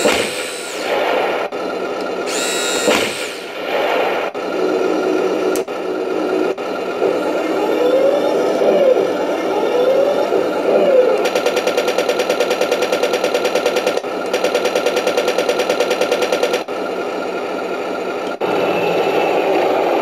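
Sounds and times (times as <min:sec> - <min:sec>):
simulated machine-gun firing: 0:00.0 - 0:04.9, 0:10.2 - 0:16.9
simulated tank engine revving: 0:00.0 - 0:20.0.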